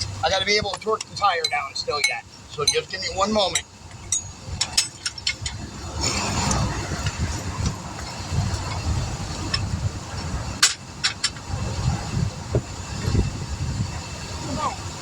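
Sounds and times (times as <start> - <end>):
highway traffic passing: 0.0 - 15.0
metal tools clinking: 0.5 - 6.6.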